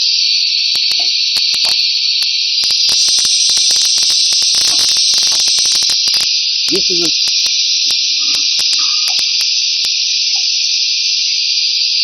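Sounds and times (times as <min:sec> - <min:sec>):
machine clicks and ticks: 0:00.7 - 0:10.0
loud pneumatic hiss: 0:02.6 - 0:06.4, 0:07.0 - 0:09.9.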